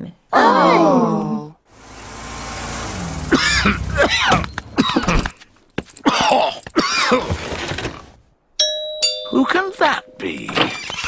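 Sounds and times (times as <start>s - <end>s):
hiss: 1.7s - 4.4s
cartoon character coughing: 3.3s - 5.4s, 6.0s - 7.3s.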